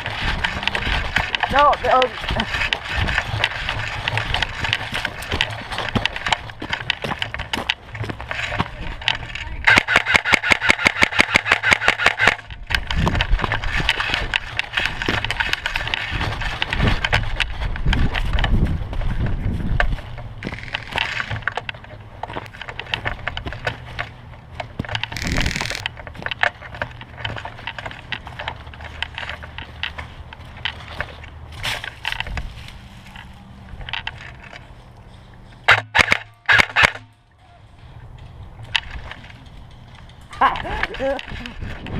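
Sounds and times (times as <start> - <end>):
handling knocks and clicks: 0.0 - 41.9
rustling of movement: 0.0 - 41.9
airsoft rifle full-auto burst: 9.7 - 12.4.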